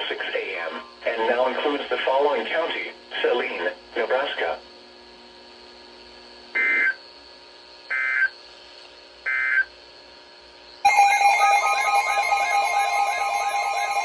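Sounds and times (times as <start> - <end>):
data tone bursts: 10.9 - 14.0
electronic alert alarm warbling: 10.9 - 14.0.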